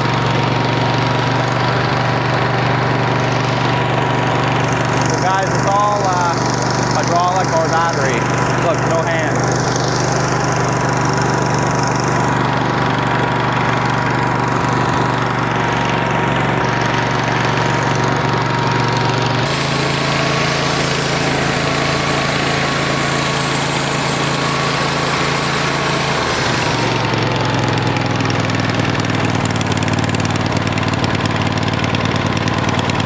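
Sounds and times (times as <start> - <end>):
gas engine running: 0.0 - 33.0
thin steady whine: 17.2 - 27.7.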